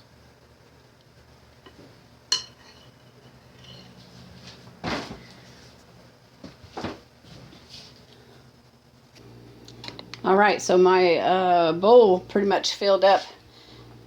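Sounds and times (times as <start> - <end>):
dishes clinking: 1.7 - 4.0.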